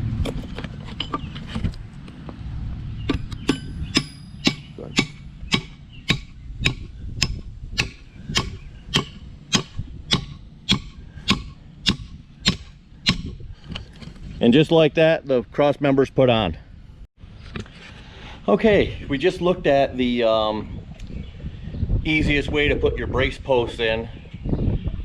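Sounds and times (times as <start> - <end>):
hammer striking a pin into wood: 3.1 - 13.4.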